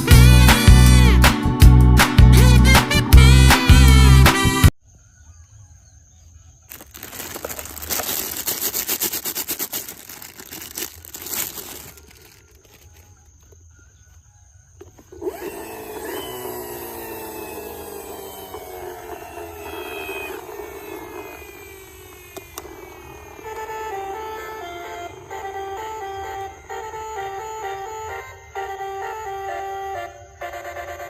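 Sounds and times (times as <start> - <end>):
plastic toys rattling: 6.7 - 13.1
steady whirring falling in pitch: 15.1 - 29.3.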